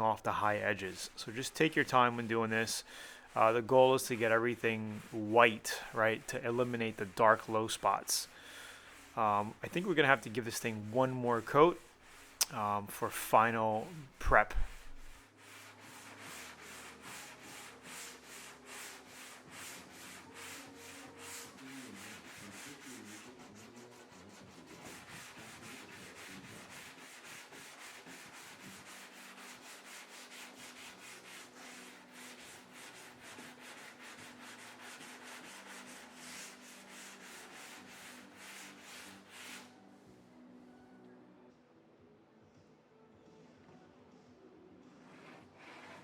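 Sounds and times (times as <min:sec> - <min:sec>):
sander rasping on sheet metal: 0:08.9 - 0:39.7.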